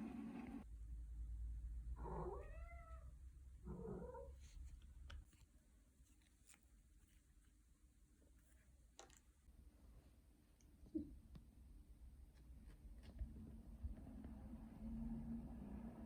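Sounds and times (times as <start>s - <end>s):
cat meowing: 2.0s - 3.1s.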